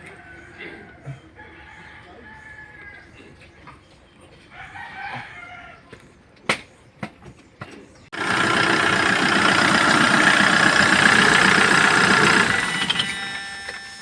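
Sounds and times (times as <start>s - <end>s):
diesel engine starting and running: 8.1s - 14.0s.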